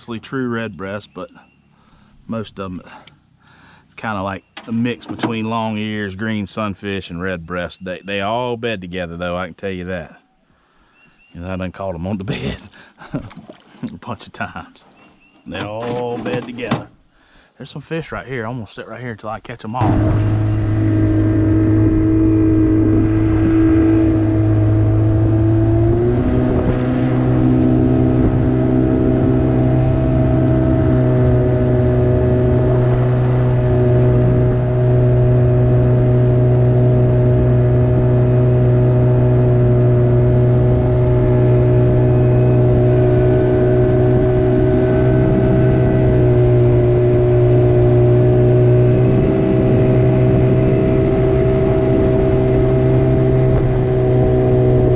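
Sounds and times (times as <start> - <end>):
outboard motor running: 4.6 - 5.9, 15.5 - 17.1, 19.8 - 54.9.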